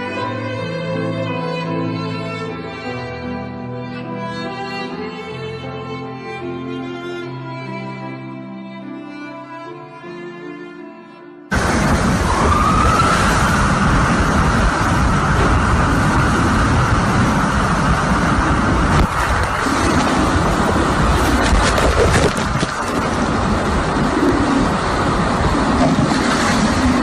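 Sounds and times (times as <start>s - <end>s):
high wind whistle: 11.5s - 27.0s
strong wind on microphone: 11.5s - 27.0s.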